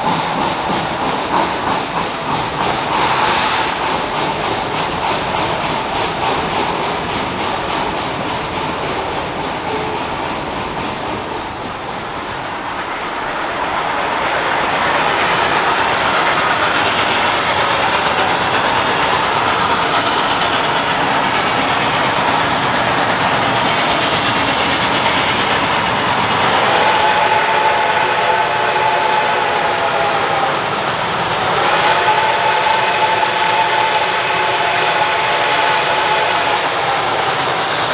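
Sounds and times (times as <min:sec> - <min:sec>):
wheels clicking over rail joints: 0:00.0 - 0:26.5
train rolling past: 0:00.0 - 0:37.9
steam whistle: 0:02.8 - 0:04.1, 0:26.4 - 0:37.5.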